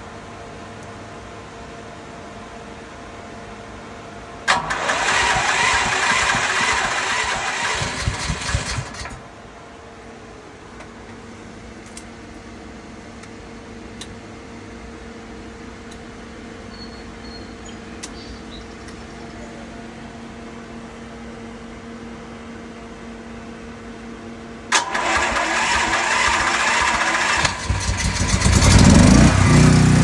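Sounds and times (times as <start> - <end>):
generator engine cranking: 4.5 - 9.4, 24.7 - 30.0.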